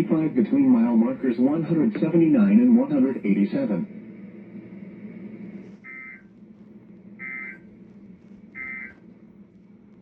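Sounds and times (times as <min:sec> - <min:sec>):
low steady hum: 0:00.0 - 0:10.0
buzzy electronic data bursts: 0:07.2 - 0:07.6.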